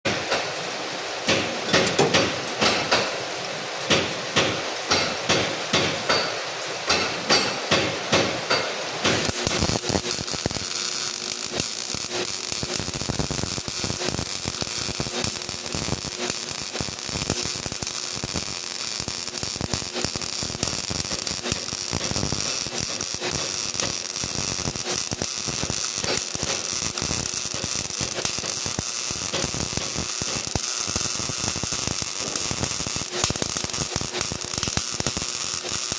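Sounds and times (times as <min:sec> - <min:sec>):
hammer striking metal: 0:01.3 - 0:03.2, 0:03.9 - 0:09.3
welding arc crackling: 0:03.9 - 0:35.9.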